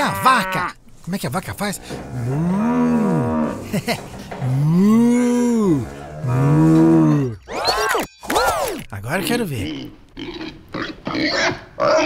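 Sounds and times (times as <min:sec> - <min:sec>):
cow mooing: 0:00.0 - 0:00.8, 0:01.8 - 0:03.7, 0:04.4 - 0:07.4.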